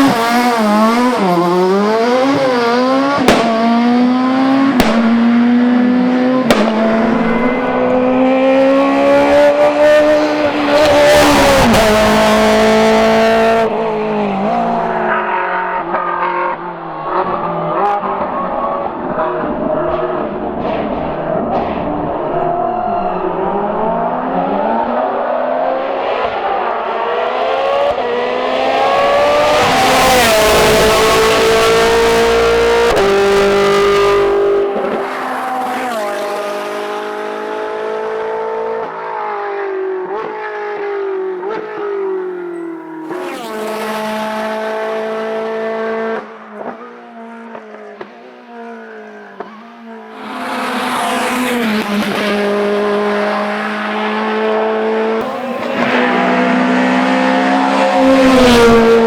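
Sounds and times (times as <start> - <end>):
race car engine at full throttle: 0.0 - 59.0
another car engine: 49.4 - 59.0.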